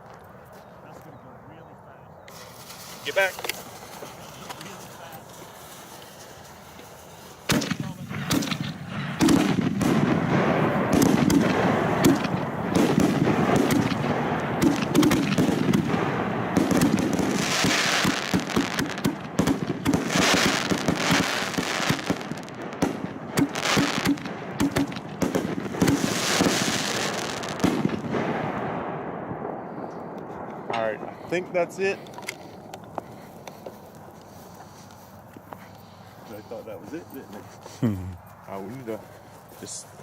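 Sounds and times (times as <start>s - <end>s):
firework hissing spurts: 2.3s - 22.5s, 23.4s - 27.9s
firework crackling pops: 2.3s - 37.0s.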